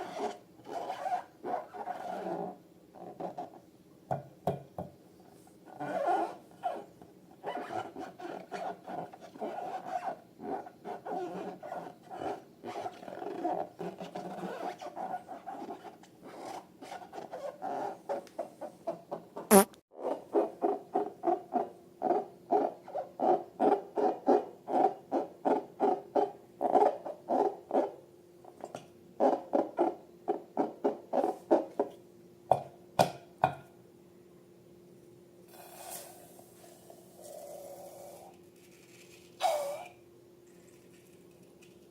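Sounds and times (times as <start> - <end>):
rubber balloons squeaking: 19.4 - 19.8.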